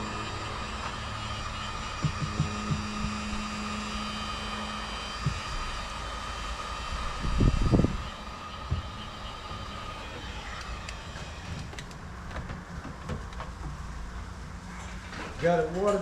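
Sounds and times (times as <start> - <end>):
electric water pump humming: 0.0 - 16.0
bumps and handling noise: 10.5 - 16.0.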